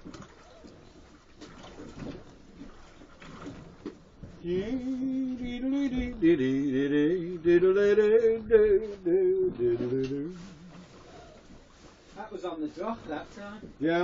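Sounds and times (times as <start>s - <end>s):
man singing long notes: 4.4s - 10.9s.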